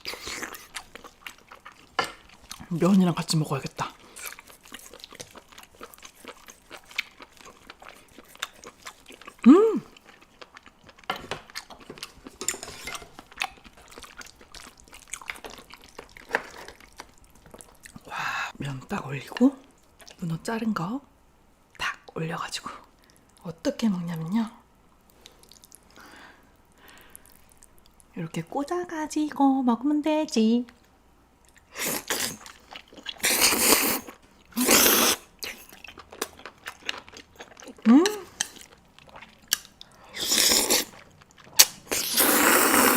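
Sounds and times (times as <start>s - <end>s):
wet chewing clicks: 3.7s - 18.1s
noisy mouthfuls: 33.2s - 35.3s, 41.9s - 42.9s.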